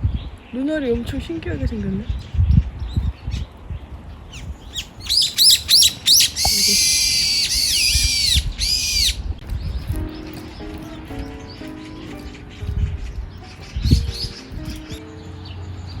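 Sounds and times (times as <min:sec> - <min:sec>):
birds chirping: 0:00.0 - 0:16.0
shrill drawn-out bird calls: 0:04.3 - 0:09.3.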